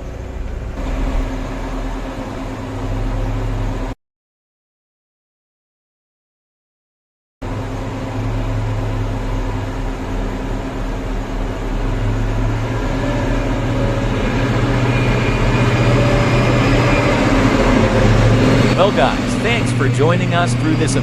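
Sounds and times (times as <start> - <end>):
diesel engine running under load: 0.0 - 4.0, 7.4 - 21.0
faint high whine: 0.8 - 4.0, 7.4 - 21.0.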